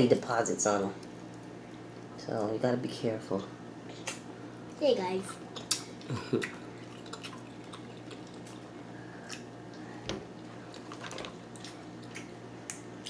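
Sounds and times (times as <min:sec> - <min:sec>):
people chewing and lip smacking: 0:03.9 - 0:04.3, 0:05.5 - 0:13.0.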